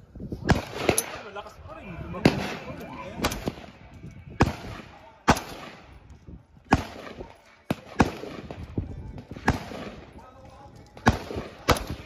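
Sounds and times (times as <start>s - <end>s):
gunshots: 0.4s - 1.4s, 2.1s - 6.0s, 6.6s - 10.3s, 10.9s - 12.0s.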